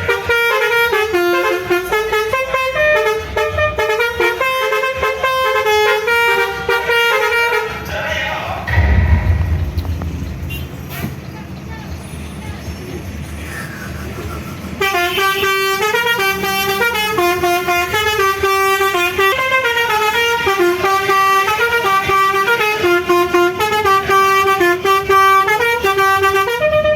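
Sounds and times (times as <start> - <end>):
multi-tone musical horn melody: 0.0 - 7.8
low vehicle rumble: 8.0 - 14.8.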